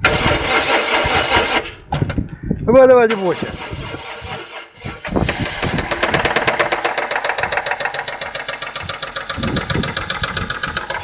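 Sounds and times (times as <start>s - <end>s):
car engine running: 5.1s - 11.0s
rapid even engine knocking: 5.2s - 11.0s.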